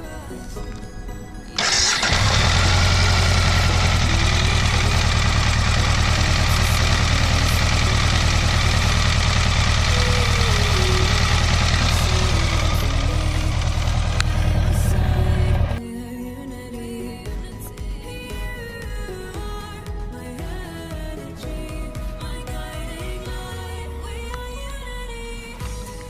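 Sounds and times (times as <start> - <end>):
motorcycle engine starting and idling: 1.6 - 15.8.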